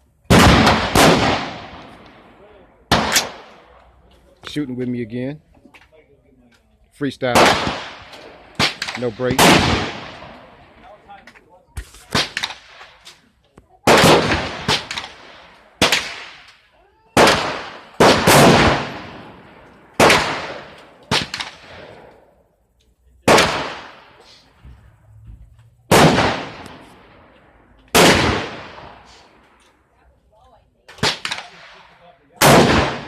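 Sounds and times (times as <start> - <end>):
rifle shots with echo: 0.2 - 4.0, 7.2 - 11.2, 11.8 - 13.2, 13.8 - 16.6, 17.2 - 22.2, 23.2 - 24.4, 25.9 - 29.5, 30.9 - 33.0.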